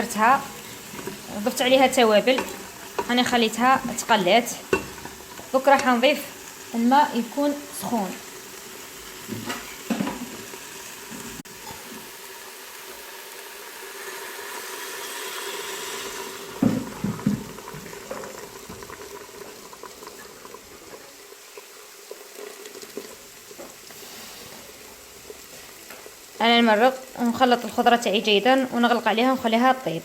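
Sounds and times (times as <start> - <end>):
water hissing in a hot pot: 0.0 - 30.0
pot knocks: 16.6 - 18.9.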